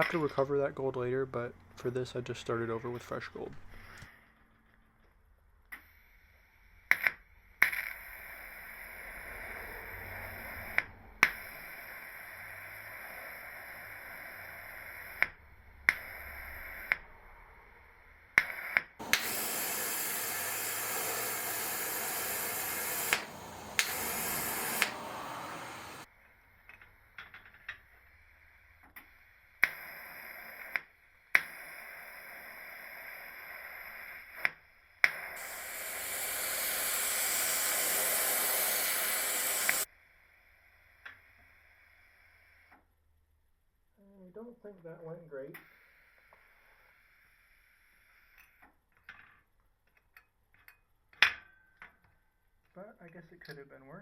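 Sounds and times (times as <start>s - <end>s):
welding arc hissing: 7.9s - 26.1s, 28.0s - 39.9s
sharp welder clicks: 18.4s - 25.1s, 34.4s - 39.9s.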